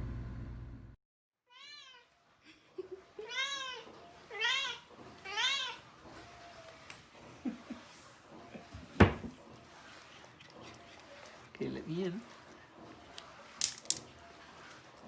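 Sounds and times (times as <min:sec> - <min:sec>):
cat meowing: 0:01.5 - 0:02.1, 0:03.2 - 0:05.8.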